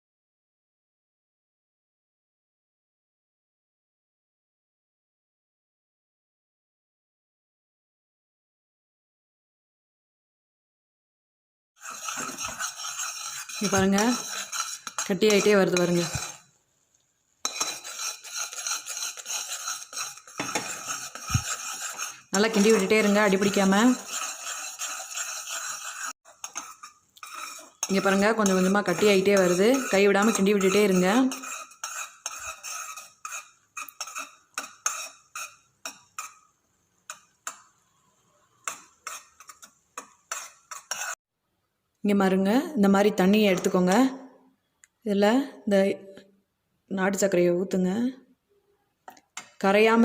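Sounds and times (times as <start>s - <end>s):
spoon scraping a pan: 11.8s - 16.6s, 17.4s - 41.2s, 43.2s - 44.1s.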